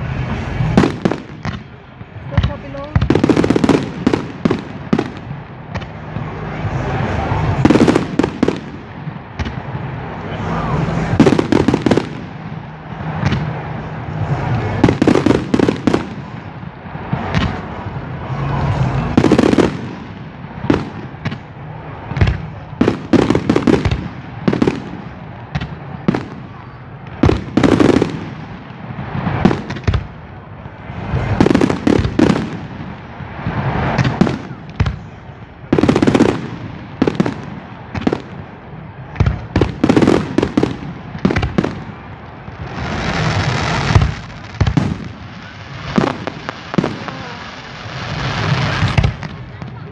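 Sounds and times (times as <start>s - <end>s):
crowd noise: 0.0s - 49.9s
fireworks bursting with bangs: 0.0s - 49.9s.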